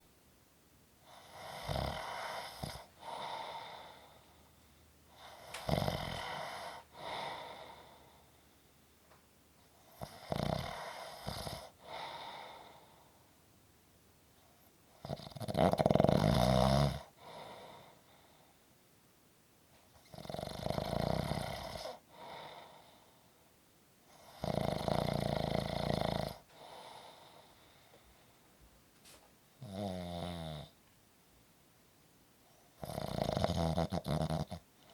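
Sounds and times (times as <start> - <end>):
soft breath: 1.0 - 8.9, 10.7 - 13.4, 17.1 - 18.8, 21.9 - 24.3, 26.4 - 29.3
person snoring: 1.1 - 4.3, 5.2 - 8.3, 10.0 - 13.0, 15.0 - 18.0, 20.0 - 23.0, 24.1 - 27.6, 29.6 - 30.8, 32.8 - 34.9.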